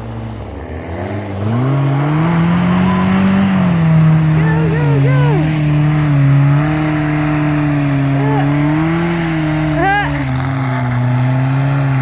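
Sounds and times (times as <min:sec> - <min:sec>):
engine droning under load: 0:00.0 - 0:12.0.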